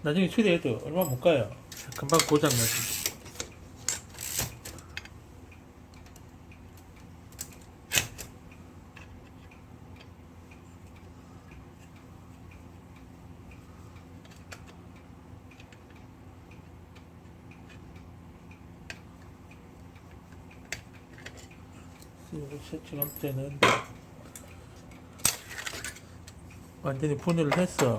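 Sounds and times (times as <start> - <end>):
steady low hum: 0.0 - 27.9
small metallic clicks: 1.0 - 5.2, 5.9 - 10.2.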